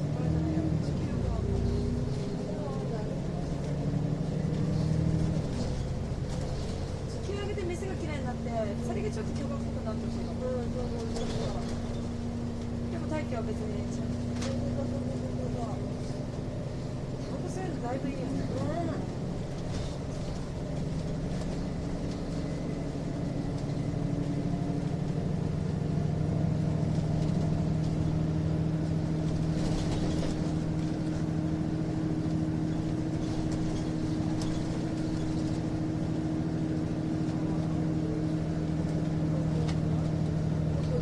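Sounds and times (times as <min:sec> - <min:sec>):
bus diesel engine hum: 0:00.0 - 0:41.0.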